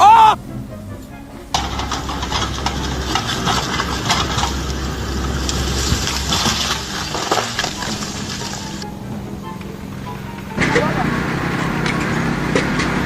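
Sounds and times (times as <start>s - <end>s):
low engine rumble: 0.0s - 13.0s
dense clatter of sharp knocks: 1.5s - 8.8s.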